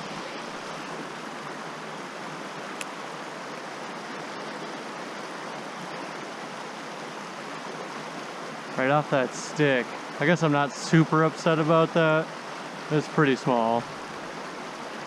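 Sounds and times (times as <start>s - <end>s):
flowing creek water: 0.0s - 15.0s.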